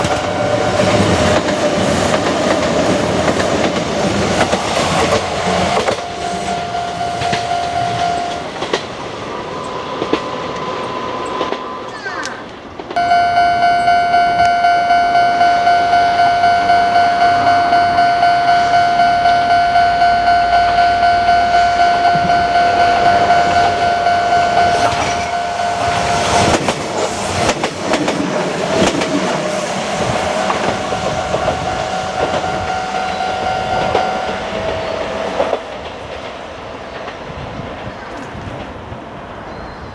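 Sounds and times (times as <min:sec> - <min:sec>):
level crossing bell ringing: 0:05.2 - 0:08.5, 0:13.0 - 0:27.5, 0:30.3 - 0:34.6
train wheels clattering over rail joints: 0:26.4 - 0:31.6.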